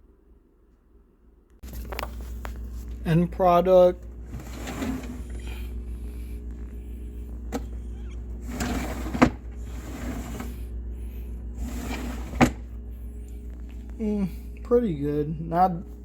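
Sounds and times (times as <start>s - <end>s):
steady low hum: 0.0s - 16.0s
plastic drawer sliding and knocking shut: 8.4s - 10.5s, 11.6s - 12.7s.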